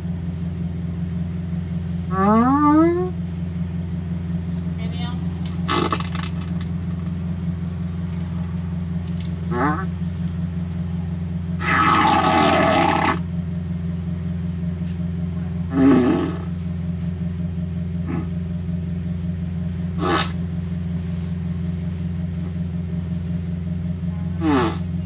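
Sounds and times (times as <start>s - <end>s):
steady low hum: 0.0s - 25.0s
fart sound effects: 5.7s - 6.4s.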